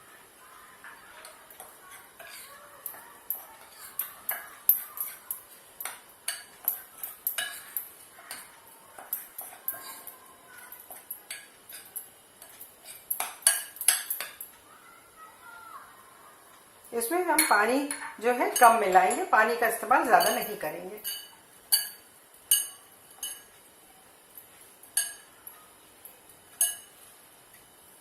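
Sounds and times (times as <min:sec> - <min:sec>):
spoon clinking and scraping a bowl: 0:00.9 - 0:14.5, 0:20.2 - 0:23.5, 0:24.9 - 0:25.3, 0:26.5 - 0:27.1.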